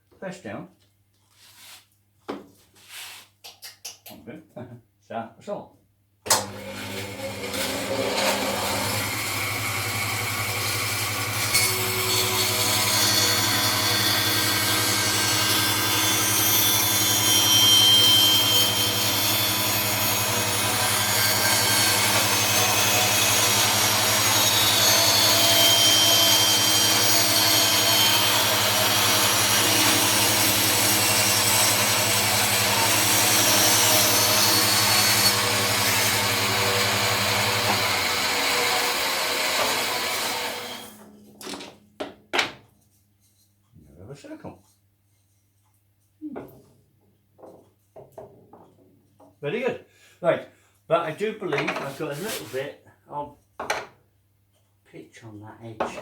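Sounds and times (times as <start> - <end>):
bandsaw cutting wood: 6.3 - 41.7.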